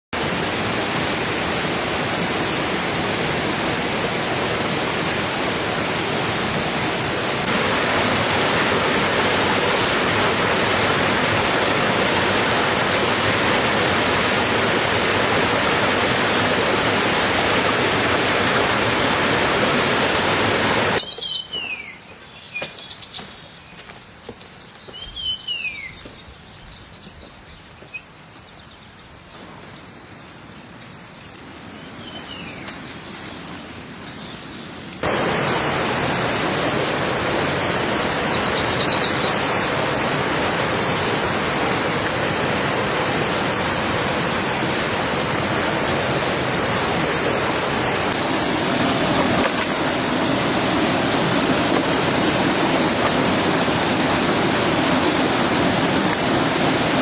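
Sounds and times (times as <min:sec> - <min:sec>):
heavy rain: 0:00.2 - 0:21.0, 0:35.0 - 0:57.0
birds chirping: 0:05.8 - 0:40.9.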